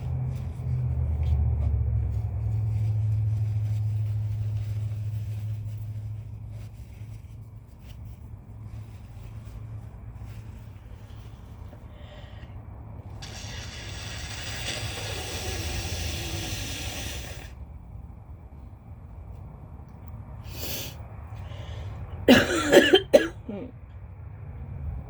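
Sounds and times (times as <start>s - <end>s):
breath through nose: 11.8s - 17.6s, 20.4s - 22.0s
person blowing nose: 13.1s - 17.6s, 20.5s - 21.0s
wet phlegmy coughs: 22.3s - 23.7s.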